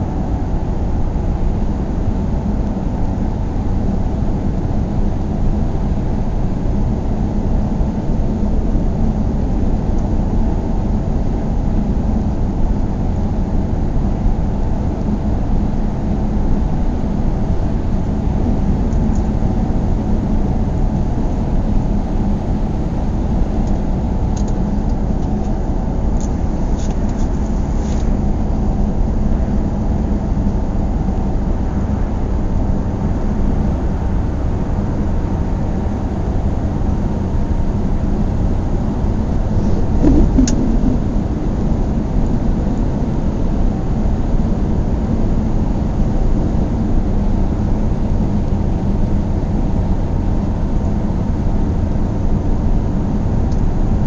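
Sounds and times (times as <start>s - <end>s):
car engine and road noise: 15.0s - 45.0s.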